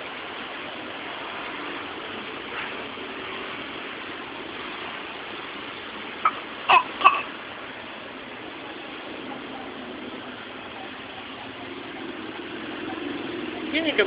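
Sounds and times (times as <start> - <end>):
steady background noise: 0.0 - 14.0
baby coughing: 6.2 - 7.3.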